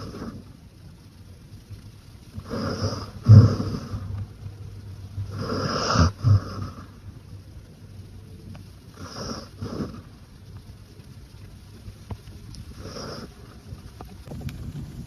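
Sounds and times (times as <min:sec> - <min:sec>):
dog snoring: 0:00.0 - 0:00.5, 0:02.4 - 0:04.3, 0:05.2 - 0:07.0, 0:08.9 - 0:10.1, 0:12.8 - 0:13.4.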